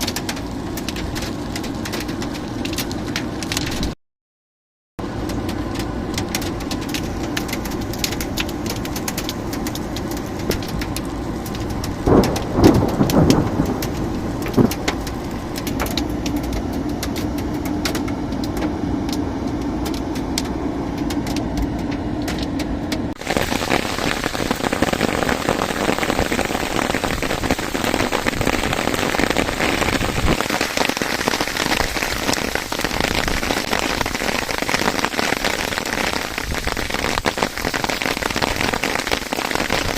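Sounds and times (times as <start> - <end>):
heavy rain pattering: 0.0 - 4.0, 5.0 - 39.9
low rumble: 5.0 - 30.5.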